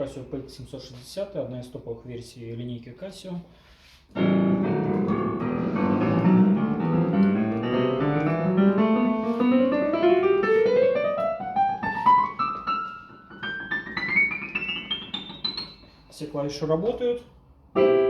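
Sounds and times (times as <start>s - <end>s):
piano ascending note run: 4.2s - 15.9s, 17.8s - 18.0s.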